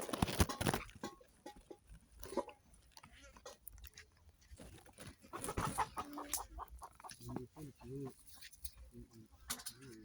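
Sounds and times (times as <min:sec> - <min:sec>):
rustles and knocks: 0:00.0 - 0:02.5
farmyard animal calls: 0:00.0 - 0:10.0.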